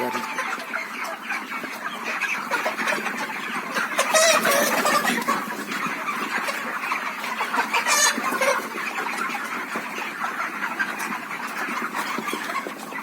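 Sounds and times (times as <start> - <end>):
high-pitched chicken call: 0.0 - 0.7
chickens clucking: 0.0 - 13.0.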